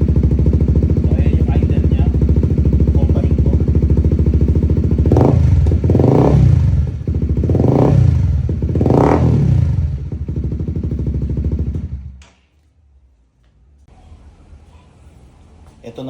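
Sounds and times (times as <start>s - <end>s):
motorcycle engine idling and revving: 0.0s - 12.4s.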